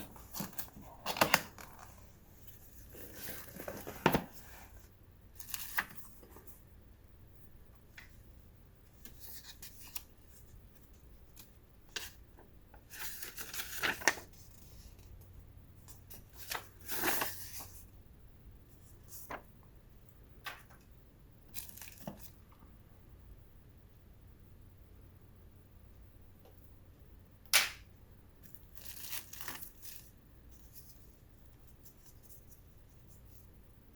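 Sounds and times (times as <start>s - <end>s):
packaging tearing and rustling: 28.8s - 30.1s.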